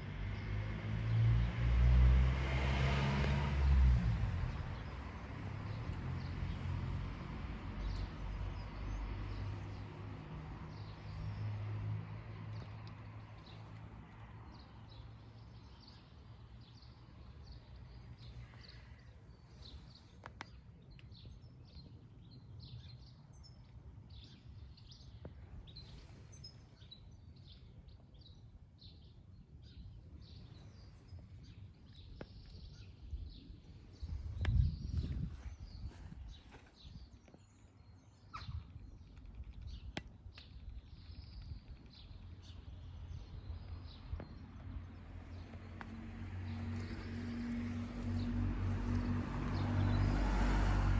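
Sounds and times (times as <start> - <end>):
low vehicle rumble: 43.4 - 50.9.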